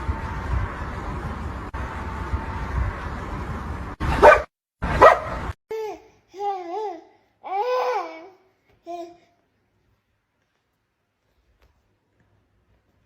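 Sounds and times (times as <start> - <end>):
steady rumbling background noise: 0.0 - 4.4
dog barking: 4.1 - 5.4.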